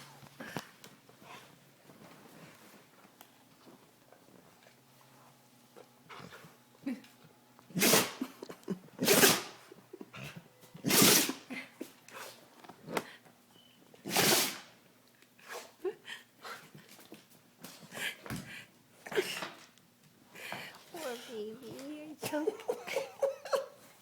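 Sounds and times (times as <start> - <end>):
dog sneezing: 7.7 - 8.4, 9.0 - 9.7, 10.8 - 12.4, 14.0 - 14.8, 15.4 - 15.8.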